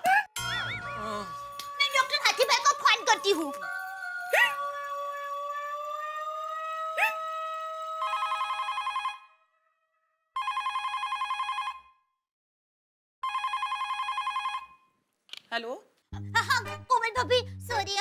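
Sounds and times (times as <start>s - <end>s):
telephone ringing: 10.4s - 11.8s, 13.2s - 14.8s.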